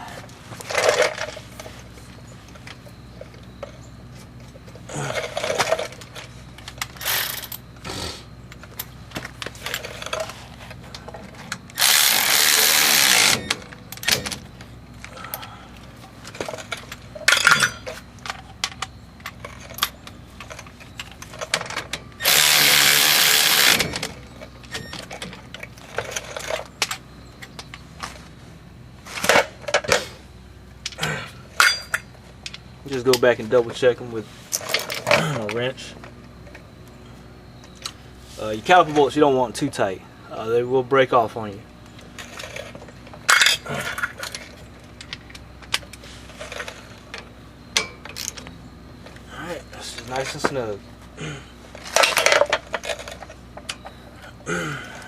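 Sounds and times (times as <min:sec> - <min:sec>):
power tool driving bolts: 0:06.8 - 0:07.6, 0:11.7 - 0:14.4, 0:21.4 - 0:25.3
metallic tool clanks: 0:17.2 - 0:18.0, 0:31.6 - 0:32.1.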